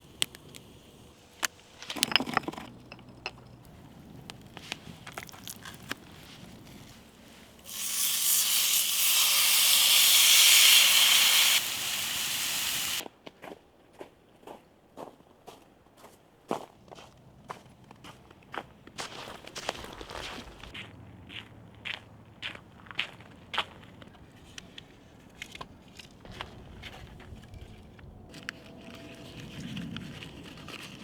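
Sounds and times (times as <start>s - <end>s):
light clicks and crunches: 1.4s - 7.6s
loud steady hiss: 7.6s - 13.0s.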